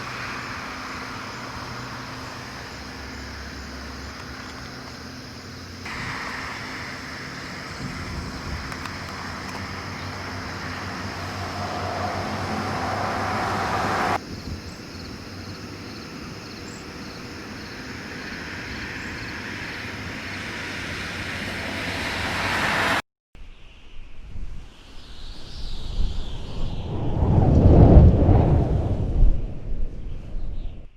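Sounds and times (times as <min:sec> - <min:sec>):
vehicle engine hum: 0:00.0 - 0:23.0
rushing noise: 0:05.9 - 0:14.2, 0:18.0 - 0:23.0.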